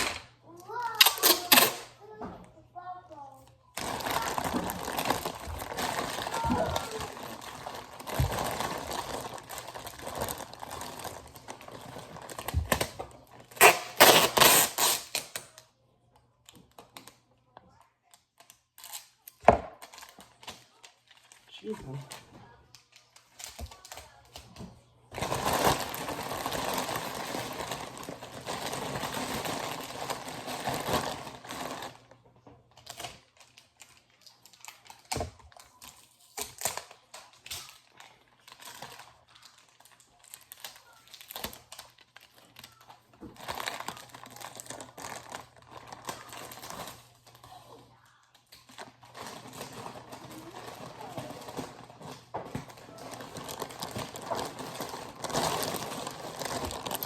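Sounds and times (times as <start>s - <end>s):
packing material rustling: 3.8s - 15.4s, 25.1s - 57.0s.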